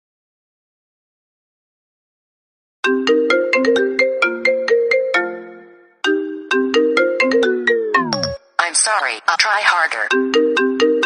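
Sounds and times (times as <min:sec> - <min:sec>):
phone ringtone melody: 0:02.8 - 0:08.4, 0:10.1 - 0:11.0.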